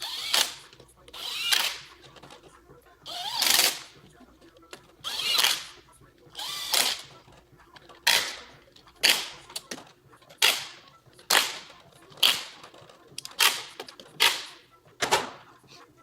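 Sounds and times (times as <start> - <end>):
impact wrench bangs: 8.0 - 9.6, 10.4 - 12.8, 13.4 - 15.5.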